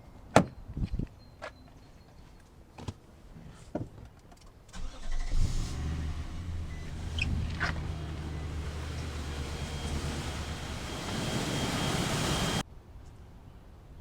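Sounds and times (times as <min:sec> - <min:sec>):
engine fan turning: 0:04.8 - 0:12.6
engine running: 0:04.8 - 0:12.6.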